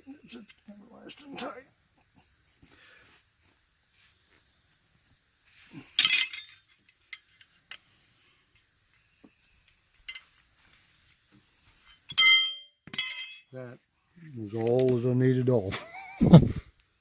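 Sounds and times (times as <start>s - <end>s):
ringing metal clanks: 6.0s - 7.4s, 11.9s - 13.6s.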